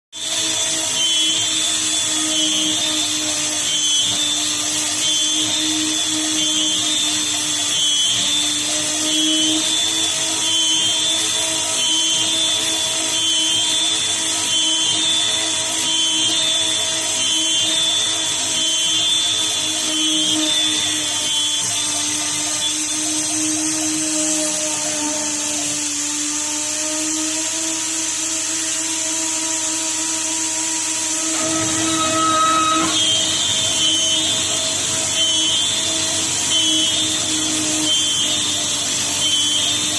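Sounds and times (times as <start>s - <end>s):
milling spindle whine: 0.2s - 39.9s
high-pitched cutting tone: 30.6s - 36.0s.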